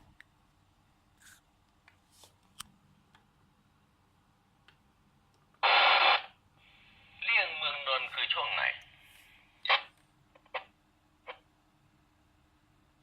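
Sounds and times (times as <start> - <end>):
radio static hiss burst: 5.6 - 9.9.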